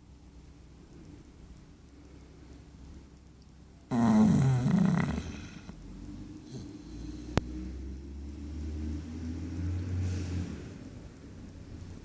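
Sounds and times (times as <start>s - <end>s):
dog snoring: 3.9s - 7.9s.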